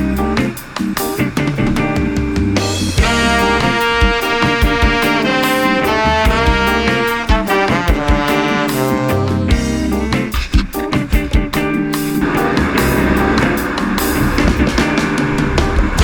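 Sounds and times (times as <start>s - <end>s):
upbeat song with drums and bass: 0.0s - 16.0s
brass section holding notes: 3.0s - 10.1s.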